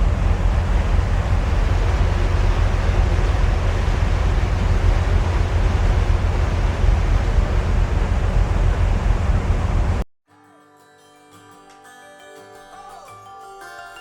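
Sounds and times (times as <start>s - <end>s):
boat engine rumble: 0.0s - 10.0s
water rushing: 0.0s - 10.0s
wind buffeting microphone: 0.0s - 10.0s.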